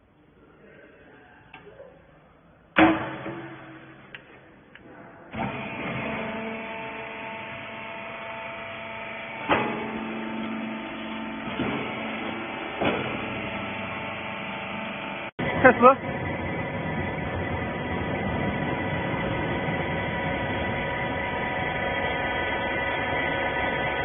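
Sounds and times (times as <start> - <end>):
metal clang: 2.8 - 4.3
hydraulic pump motor humming: 5.3 - 24.0.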